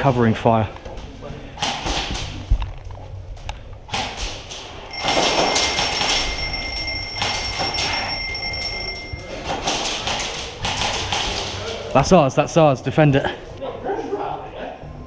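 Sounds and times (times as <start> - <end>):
electronic alarm tone: 4.9 - 9.7.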